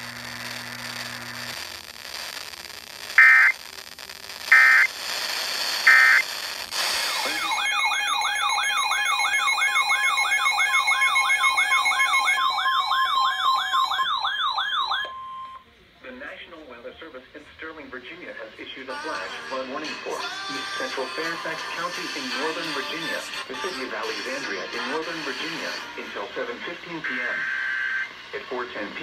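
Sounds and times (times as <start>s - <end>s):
short digital data bursts: 3.1s - 3.6s, 4.5s - 5.0s, 5.7s - 12.4s
warbling alert tone: 7.1s - 15.4s.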